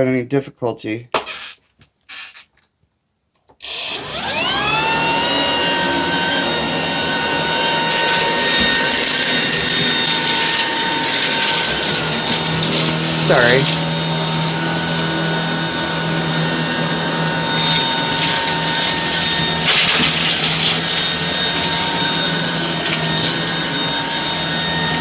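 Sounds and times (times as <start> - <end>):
vacuum motor whine: 3.6 - 25.0.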